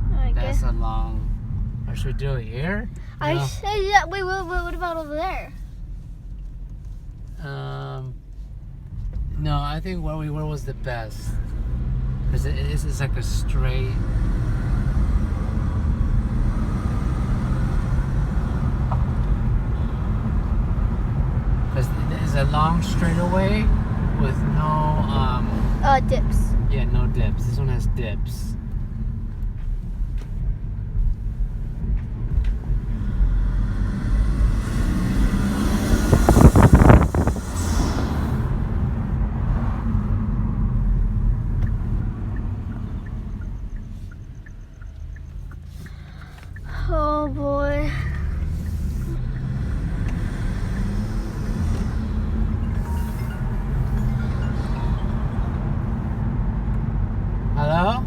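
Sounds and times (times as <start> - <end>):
car engine rumble from inside cabin: 0.0 - 58.0
road noise: 0.0 - 58.0
rushing swell: 33.4 - 40.2.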